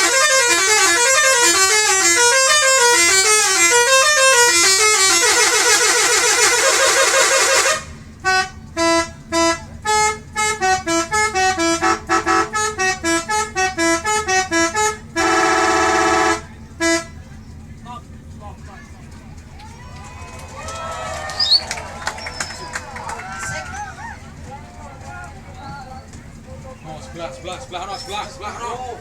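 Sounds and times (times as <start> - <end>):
multi-tone bus horn melody: 0.0 - 17.4.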